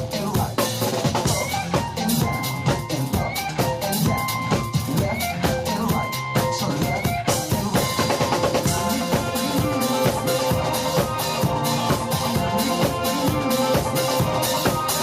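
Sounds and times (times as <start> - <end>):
band playing: 0.0 - 15.0
drum kit beat: 0.0 - 15.0.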